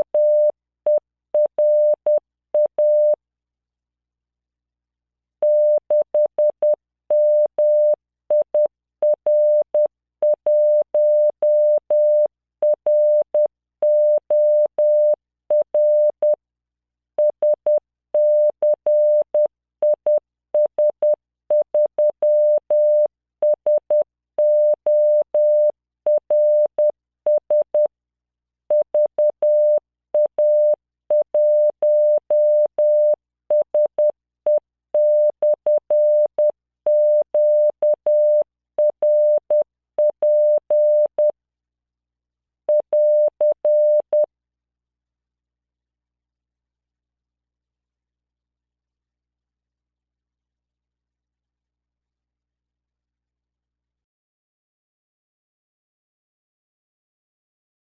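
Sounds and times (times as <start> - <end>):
morse code tone: 28.7 - 41.3.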